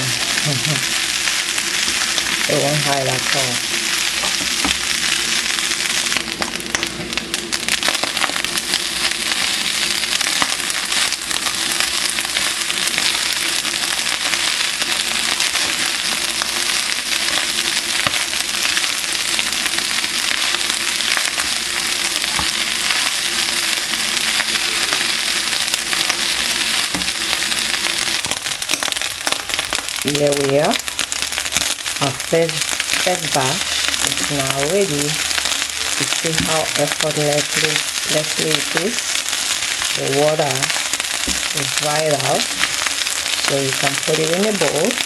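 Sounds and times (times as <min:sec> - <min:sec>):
food frying in hot oil: 0:00.0 - 0:45.0.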